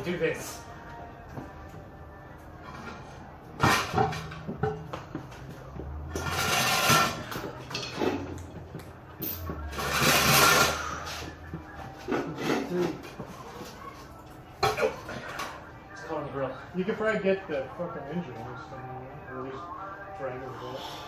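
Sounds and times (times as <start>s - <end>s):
metal scraping and rattling: 6.1s - 8.4s, 9.2s - 11.2s.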